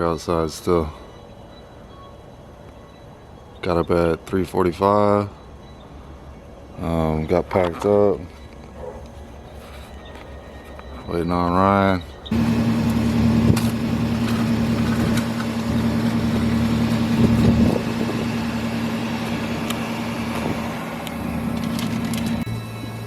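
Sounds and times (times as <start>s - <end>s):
vehicle engine idling: 12.0s - 23.0s.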